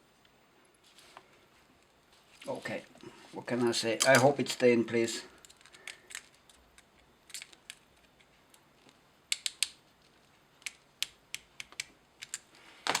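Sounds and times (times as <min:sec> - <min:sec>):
small parts and tools clicking: 0:05.4 - 0:13.0.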